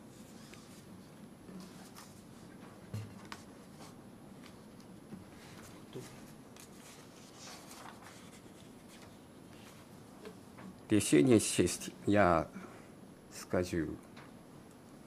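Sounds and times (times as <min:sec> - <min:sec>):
faint clicks and rustles: 0:00.2 - 0:10.9.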